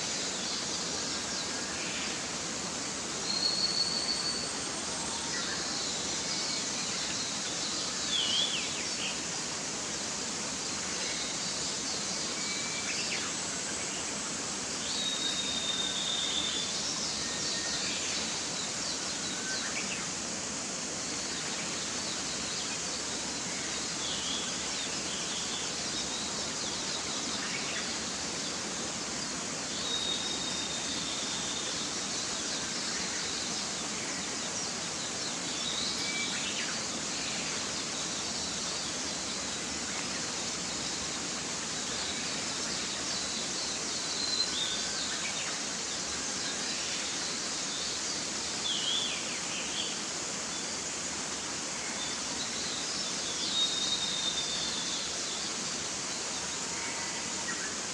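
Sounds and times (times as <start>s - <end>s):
stream rushing: 0.0s - 57.9s
songbird chirps and whistles: 3.2s - 4.6s, 14.9s - 17.8s, 29.7s - 31.7s, 53.2s - 55.1s.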